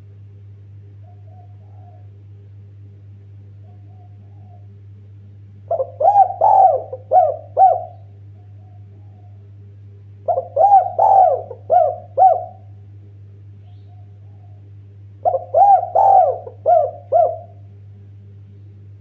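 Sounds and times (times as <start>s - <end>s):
steady low hum: 0.0s - 19.0s
dove cooing: 1.0s - 2.2s, 3.6s - 4.8s, 5.7s - 9.5s, 10.2s - 12.8s, 13.6s - 17.7s.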